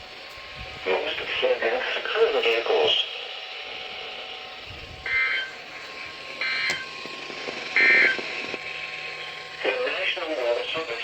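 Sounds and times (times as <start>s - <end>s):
radio hiss: 0.8s - 3.2s, 6.4s - 11.0s
two-tone digital data screech: 5.1s - 5.6s, 7.8s - 8.3s.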